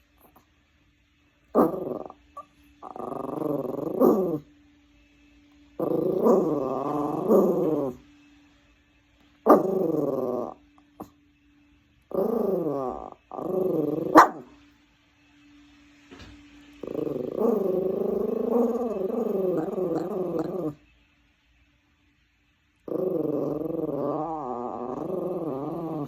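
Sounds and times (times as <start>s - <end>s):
dog growling: 1.5s - 4.5s, 5.8s - 8.0s, 9.4s - 11.1s, 12.1s - 14.5s, 16.8s - 20.8s, 22.8s - 26.0s.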